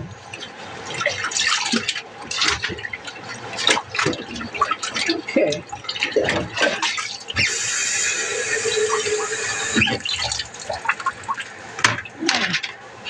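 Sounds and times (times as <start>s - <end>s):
tap running into sink: 6.2s - 11.0s.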